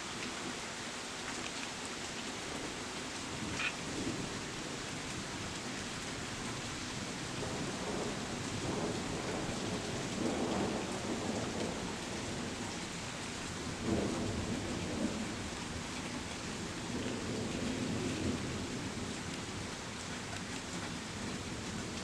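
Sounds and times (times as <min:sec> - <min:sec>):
heavy rain: 0:00.0 - 0:22.0
thunder rumbling: 0:07.3 - 0:12.8.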